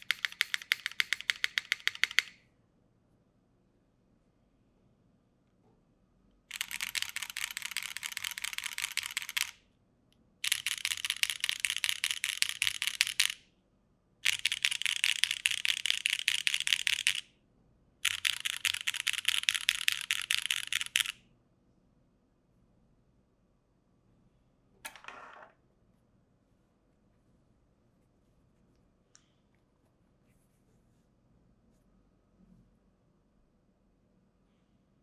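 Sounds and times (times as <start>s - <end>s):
mechanical keyboard clacking: 0.0s - 2.4s, 6.5s - 9.6s, 10.4s - 13.4s, 14.2s - 17.2s, 18.0s - 21.2s.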